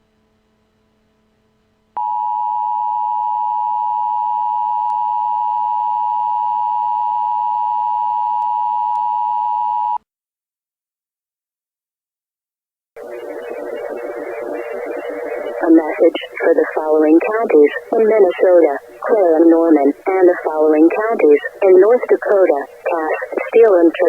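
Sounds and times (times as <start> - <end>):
faint hum: 13.0 - 24.0
steady warning alarm tone: 13.0 - 24.0.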